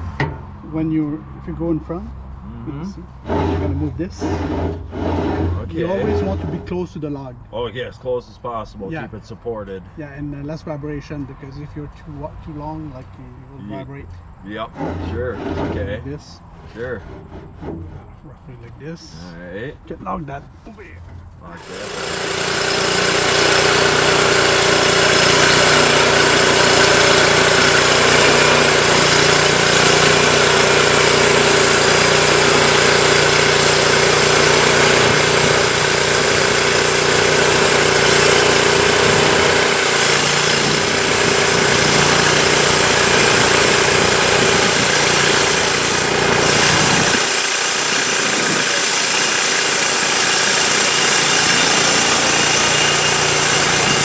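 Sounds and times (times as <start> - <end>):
sawmill engine running: 3.2 - 6.8, 21.4 - 54.0.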